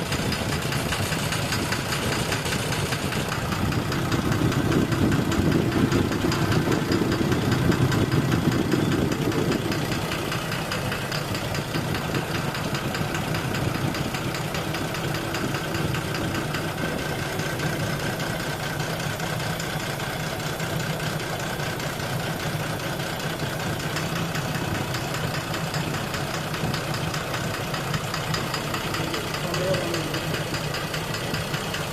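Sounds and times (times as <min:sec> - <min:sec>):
car engine idling with knocking: 0:00.0 - 0:31.9.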